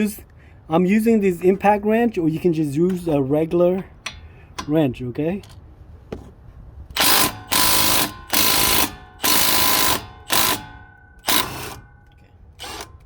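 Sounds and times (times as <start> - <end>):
impact wrench hammering: 4.0 - 4.8, 6.9 - 13.0.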